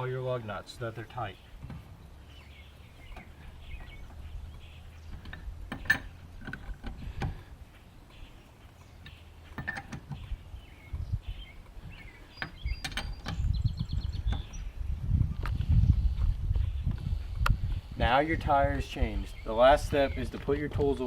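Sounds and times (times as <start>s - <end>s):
bird chirps: 1.2s - 6.7s, 7.6s - 18.2s, 18.9s - 20.6s
metal wrench clinking on nuts: 5.2s - 6.8s, 9.0s - 10.0s.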